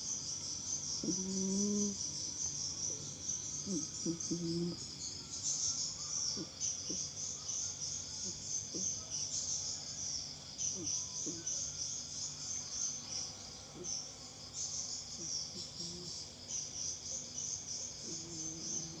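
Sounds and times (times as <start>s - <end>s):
insects chirping: 0.0s - 19.0s
cat snoring softly: 1.0s - 2.0s, 18.0s - 19.0s.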